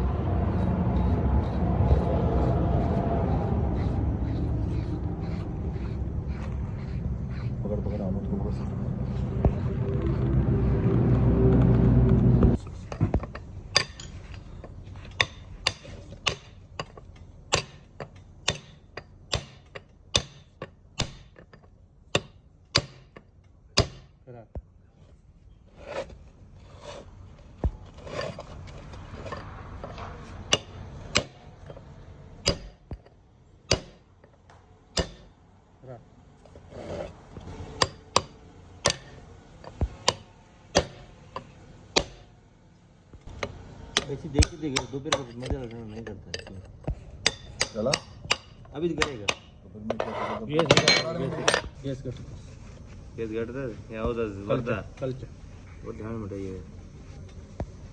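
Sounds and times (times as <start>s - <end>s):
hammer tapping on metal: 15.0s - 21.4s, 30.4s - 31.6s, 32.4s - 33.1s, 33.7s - 35.4s, 37.7s - 42.3s, 43.3s - 49.6s.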